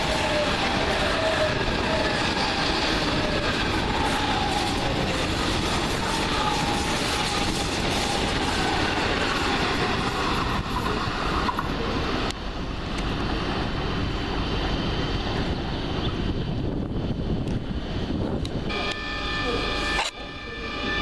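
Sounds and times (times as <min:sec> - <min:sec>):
train wheels rumbling on track: 0:00.0 - 0:21.0.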